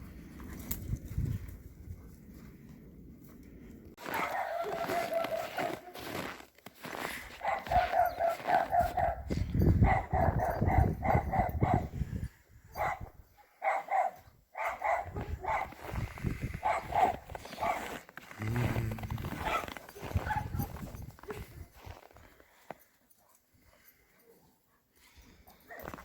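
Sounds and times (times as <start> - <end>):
dog barking: 4.0 - 6.3, 7.3 - 11.9, 12.8 - 15.9, 16.6 - 18.0, 19.3 - 21.4.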